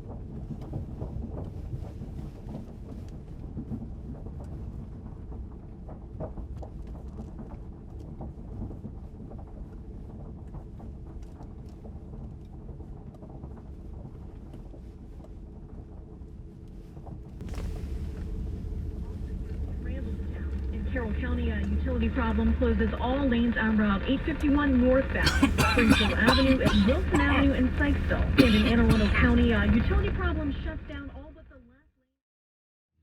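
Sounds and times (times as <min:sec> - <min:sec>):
faint hum: 0:15.0 - 0:31.6.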